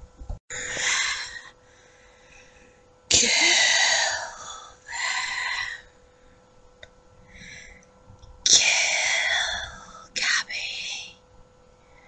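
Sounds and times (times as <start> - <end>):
person whispering: 8.6 - 11.2.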